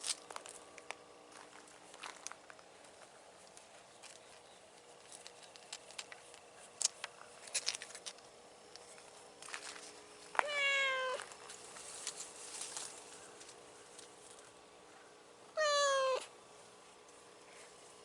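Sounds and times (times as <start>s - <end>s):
sharp clicks and rustles: 2.2s - 10.4s
cat meowing: 10.4s - 11.2s, 15.6s - 16.3s.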